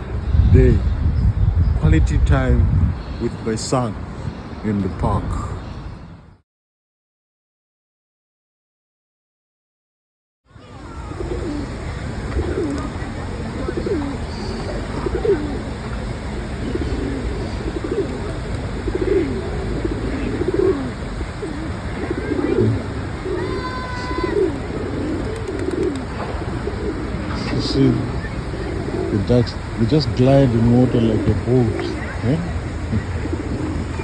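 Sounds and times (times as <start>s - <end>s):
pigeons cooing: 10.7s - 34.0s.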